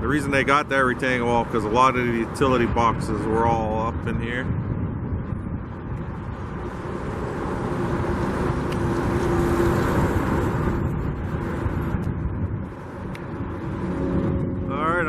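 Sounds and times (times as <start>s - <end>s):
freeway traffic rush: 0.0s - 15.0s
vehicle passing close by: 6.1s - 15.0s.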